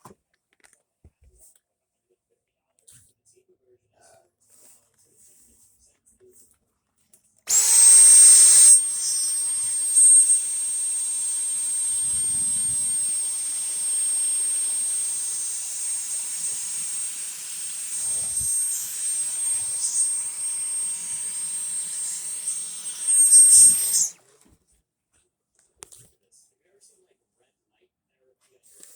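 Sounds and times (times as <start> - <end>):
vacuum cleaner motor whining: 7.5 - 24.2.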